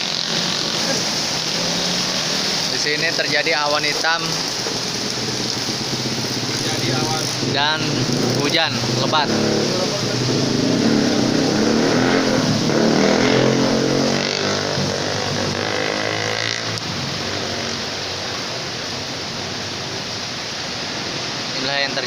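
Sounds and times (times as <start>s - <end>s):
heavy rain hiss: 0.0s - 22.0s
vehicle engine passing by: 5.0s - 18.0s.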